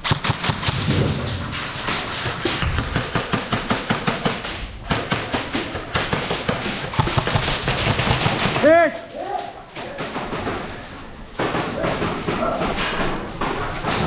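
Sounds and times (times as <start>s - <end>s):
airsoft guns firing in bursts: 0.0s - 9.0s.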